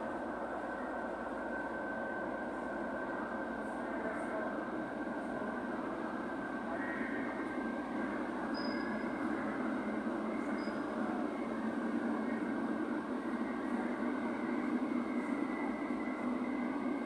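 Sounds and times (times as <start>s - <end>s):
faint high squeaks: 8.5s - 9.2s, 10.5s - 10.9s.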